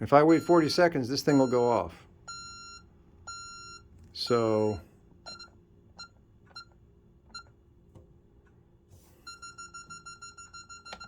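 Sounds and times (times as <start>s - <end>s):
alarm keypad beeping: 0.2s - 4.4s, 9.3s - 11.0s.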